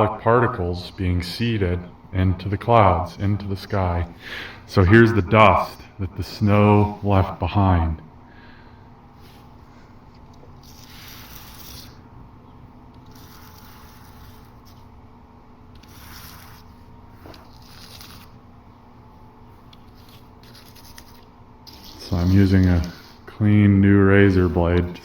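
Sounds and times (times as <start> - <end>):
steady low hum: 0.0 - 25.0
razor blade scraping paint: 10.6 - 12.0, 12.9 - 14.9, 15.8 - 18.4, 19.7 - 23.4.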